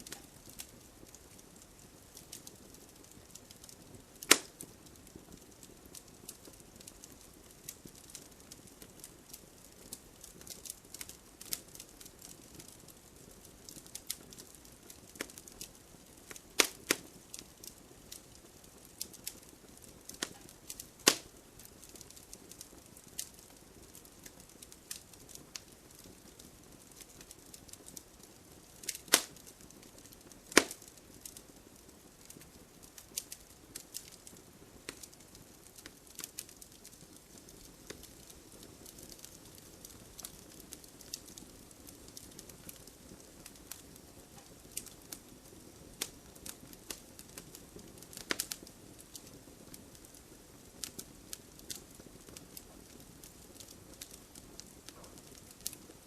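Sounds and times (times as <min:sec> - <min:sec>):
wood fire crackling and popping: 0:00.0 - 0:56.0
fire hiss: 0:03.8 - 0:05.0, 0:15.0 - 0:27.8, 0:28.4 - 0:31.4.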